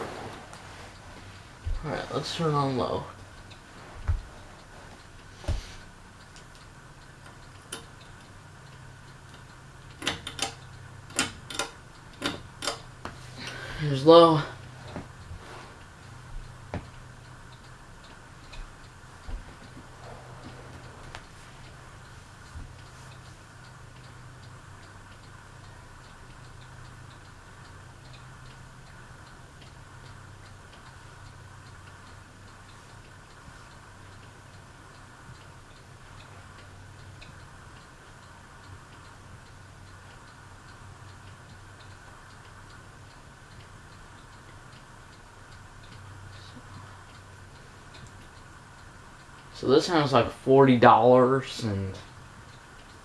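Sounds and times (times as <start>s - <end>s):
ceiling fan motor hum: 0.0s - 53.0s
light fan ticking: 0.0s - 53.0s
sharp irregular clicks: 6.2s - 13.2s, 21.0s - 53.0s.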